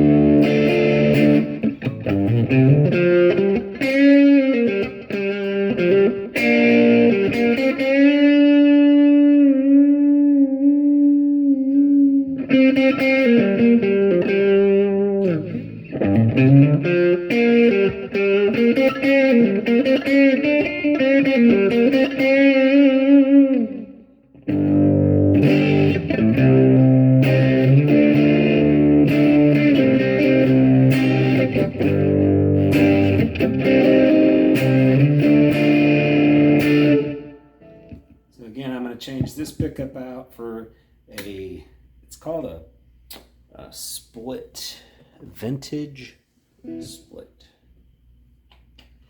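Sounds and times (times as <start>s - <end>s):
electric guitar playing: 0.0s - 38.3s, 46.6s - 47.1s.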